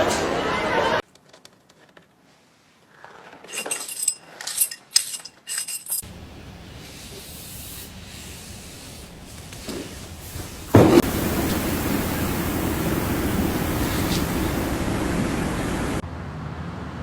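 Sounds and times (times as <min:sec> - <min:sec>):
steady hiss: 0:06.0 - 0:16.0.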